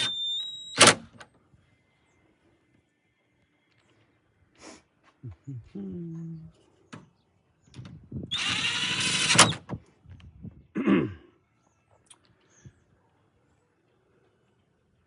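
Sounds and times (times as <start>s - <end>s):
power drill running: 8.3s - 9.4s.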